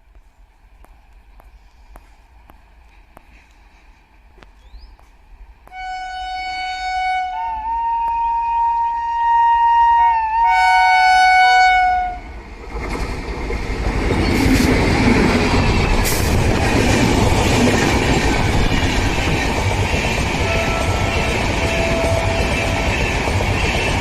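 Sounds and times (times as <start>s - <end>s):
two-tone locomotive horn: 5.7s - 12.4s, 20.4s - 23.1s
train wheels rushing on rails: 12.3s - 24.0s.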